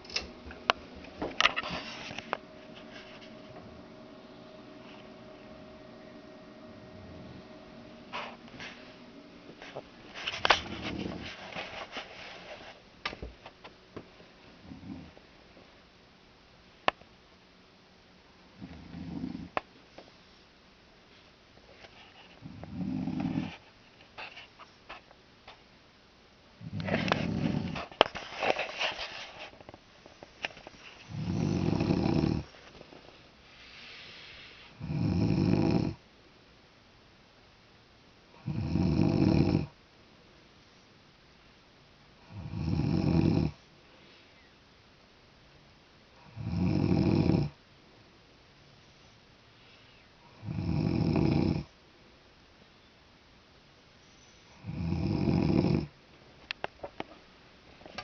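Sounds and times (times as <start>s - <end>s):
woman snoring: 14.6s - 15.2s, 18.6s - 19.6s, 22.4s - 23.5s, 26.6s - 27.8s, 31.1s - 32.5s, 34.7s - 36.0s, 38.4s - 39.8s, 42.2s - 43.6s, 46.2s - 47.6s, 50.2s - 51.7s, 54.6s - 55.9s.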